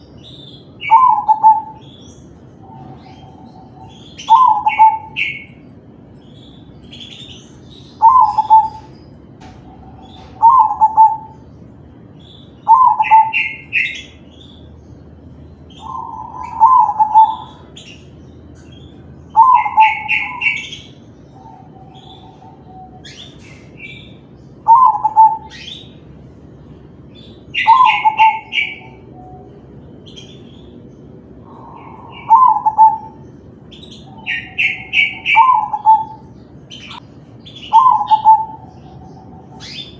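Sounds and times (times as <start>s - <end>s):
dove cooing: 0.8s - 2.0s, 2.6s - 5.6s, 8.0s - 11.4s, 12.6s - 14.0s, 15.8s - 17.8s, 19.3s - 24.0s, 24.6s - 25.8s, 27.6s - 29.6s, 31.4s - 33.3s, 34.0s - 39.9s.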